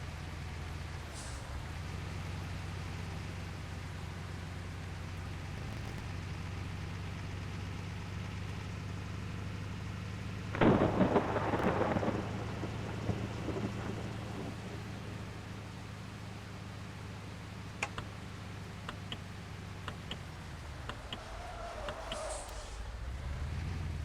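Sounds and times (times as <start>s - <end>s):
truck engine humming: 0.0s - 24.0s
loud burst of rumbling: 10.5s - 15.8s.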